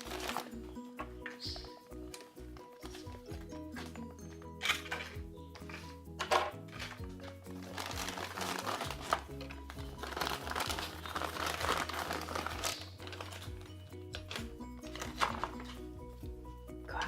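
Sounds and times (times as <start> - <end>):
packaging crinkling: 0.0 - 0.6, 6.8 - 15.8
background music with bass: 0.0 - 17.0.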